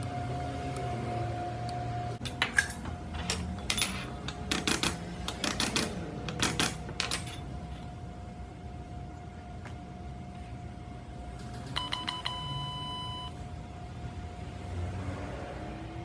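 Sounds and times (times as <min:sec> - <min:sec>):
steady workshop hum: 0:00.0 - 0:16.0
metal parts clinking: 0:02.2 - 0:07.5.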